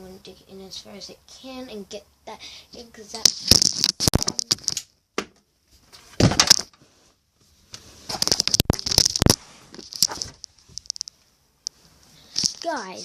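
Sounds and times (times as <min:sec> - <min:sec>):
clicking and crackling handling noise: 0:08.2 - 0:11.8, 0:12.4 - 0:13.0.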